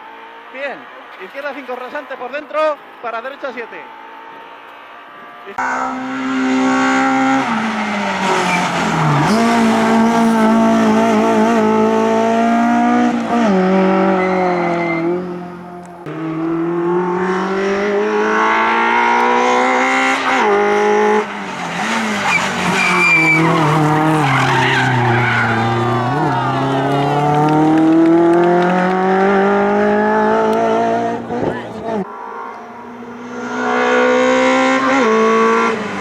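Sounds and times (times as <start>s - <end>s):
rally car engine revving: 3.8s - 36.0s
tyres squealing: 22.0s - 27.1s.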